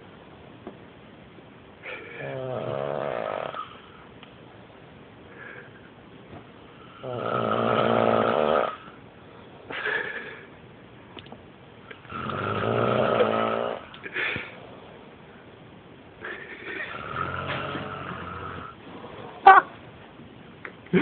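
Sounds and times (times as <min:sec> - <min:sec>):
person snoring: 0:01.9 - 0:03.8, 0:06.8 - 0:08.9, 0:12.1 - 0:13.9, 0:16.8 - 0:18.8
person breathing: 0:05.3 - 0:05.9, 0:14.1 - 0:14.7.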